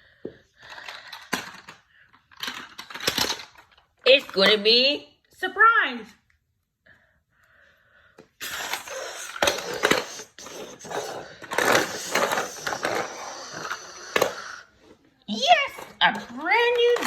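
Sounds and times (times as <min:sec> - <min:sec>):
plastic toy pieces clattering: 0:00.6 - 0:04.6, 0:08.6 - 0:14.7, 0:15.5 - 0:17.0.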